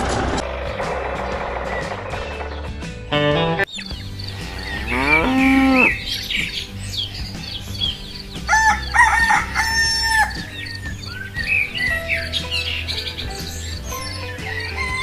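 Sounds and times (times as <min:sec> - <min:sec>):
small birds chirping: 0:03.6 - 0:15.0
cow mooing: 0:04.4 - 0:06.0
rooster crowing: 0:08.5 - 0:10.5.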